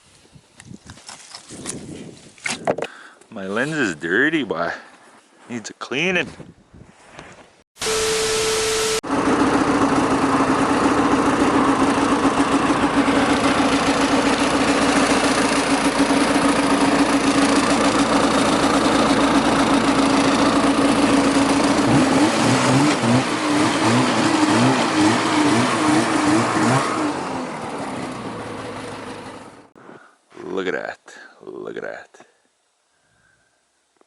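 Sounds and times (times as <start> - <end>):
vehicle engine running: 7.8 - 29.7.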